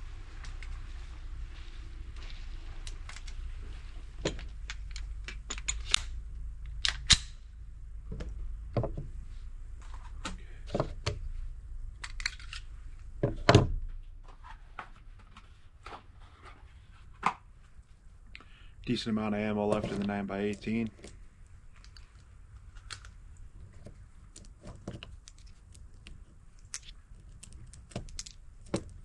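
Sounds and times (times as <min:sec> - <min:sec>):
small hard objects clicking: 0:24.3 - 0:29.0.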